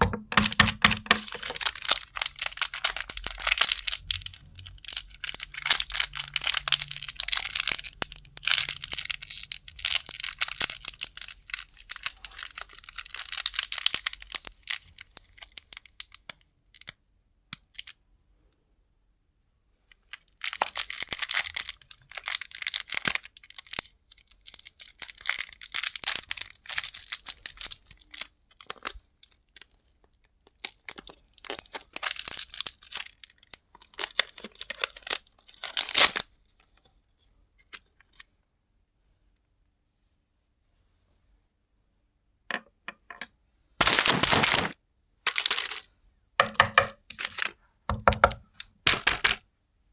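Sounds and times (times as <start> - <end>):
plastic wrappers crinkling: 0.0 - 16.9, 20.1 - 36.3, 43.8 - 45.9, 47.0 - 47.6, 48.8 - 49.4.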